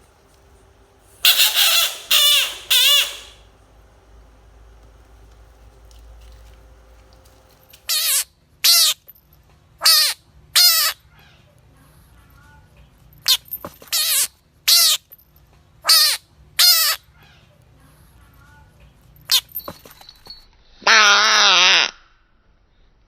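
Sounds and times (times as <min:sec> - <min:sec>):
bullfrog distress scream: 0:01.2 - 0:03.4, 0:20.8 - 0:21.9.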